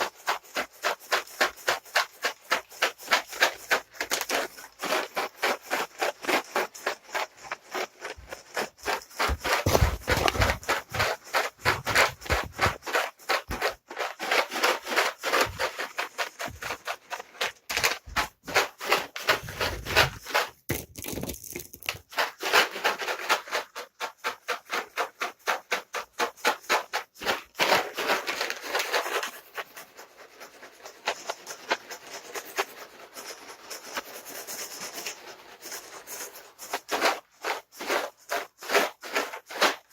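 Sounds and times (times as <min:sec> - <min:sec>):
cat treats rattling in container: 0:00.0 - 0:39.9.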